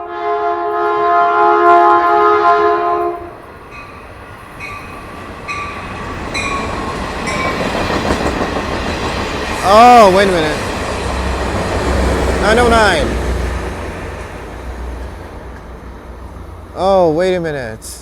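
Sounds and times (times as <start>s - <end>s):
train air horn: 0.0s - 3.5s
train rumbling: 0.0s - 18.0s.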